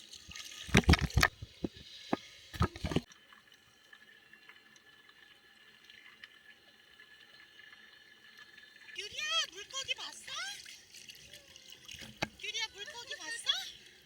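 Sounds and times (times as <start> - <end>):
water splashing and sloshing: 0.0 - 12.8.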